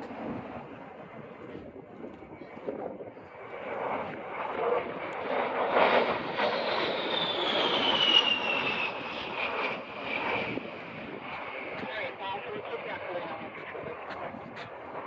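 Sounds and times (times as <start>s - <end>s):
jet flying past: 0.0s - 15.0s
high falling jet whine: 4.9s - 13.2s.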